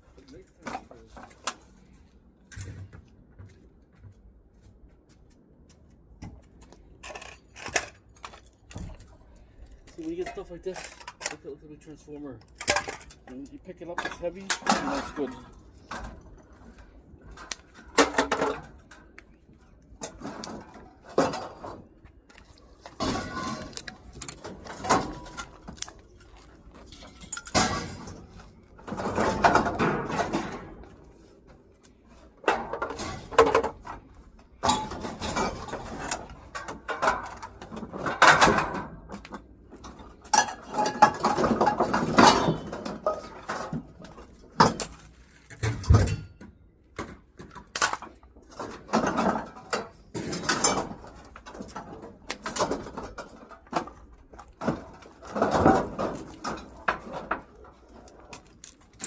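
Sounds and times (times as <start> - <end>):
rummaging clatter: 7.0 - 19.2, 20.0 - 46.2, 47.0 - 59.0
scrap metal clanking: 22.8 - 31.0.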